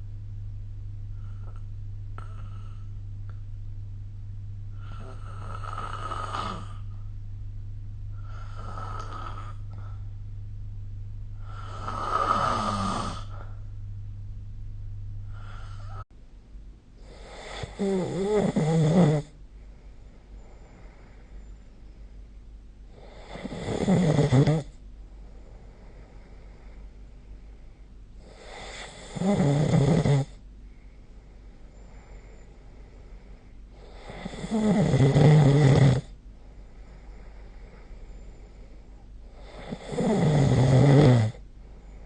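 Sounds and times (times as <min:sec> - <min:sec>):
person snoring: 0:01.1 - 0:03.0, 0:04.7 - 0:07.1, 0:08.1 - 0:10.1, 0:11.3 - 0:13.6, 0:15.2 - 0:16.0, 0:17.0 - 0:19.3, 0:22.9 - 0:24.7, 0:28.2 - 0:30.3, 0:33.8 - 0:36.1, 0:39.3 - 0:41.4.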